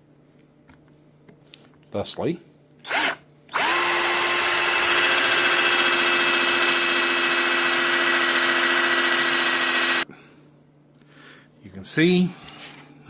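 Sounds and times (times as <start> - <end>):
cordless drill running: 2.8 - 10.1.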